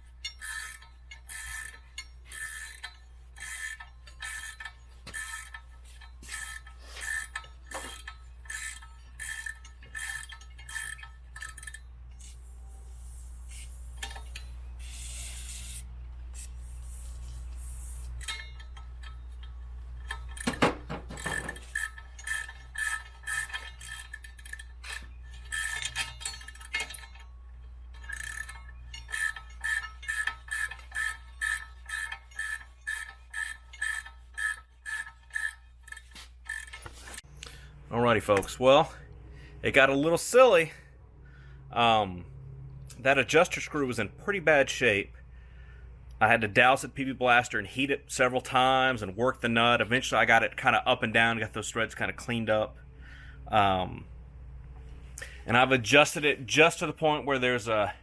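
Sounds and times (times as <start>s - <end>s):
ratchet wrench clicking: 0.0s - 37.5s.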